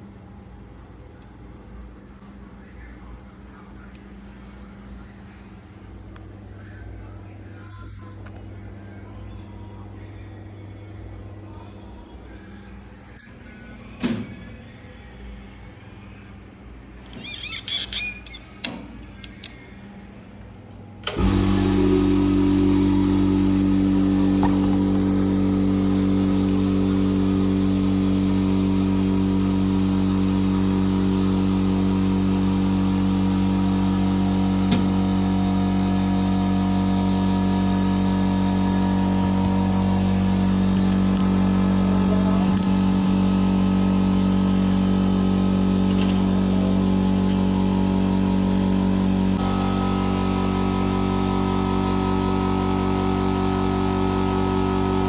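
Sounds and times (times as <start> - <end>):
machine motor humming: 20.8 - 55.0.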